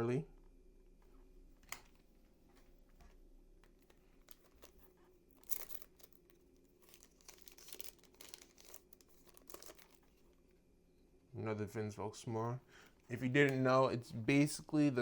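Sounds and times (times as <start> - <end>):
plastic wrapper crinkling and tearing: 3.7 - 10.4.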